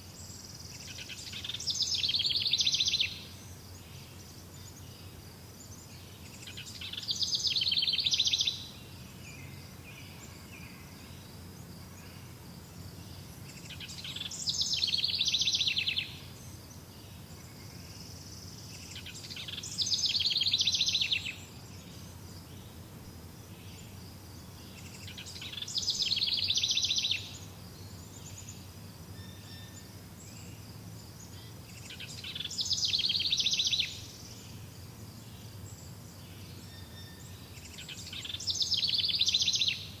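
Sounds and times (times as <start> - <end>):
songbird trilling: 0.8 - 3.3, 6.4 - 8.8, 13.6 - 16.4, 17.4 - 21.9, 24.6 - 29.8, 31.3 - 34.4, 36.6 - 40.0.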